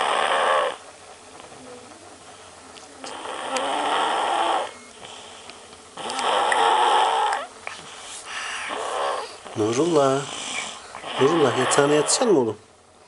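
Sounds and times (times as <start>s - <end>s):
boy snoring: 0.0s - 0.8s, 3.0s - 4.7s, 6.0s - 7.5s, 8.4s - 12.3s.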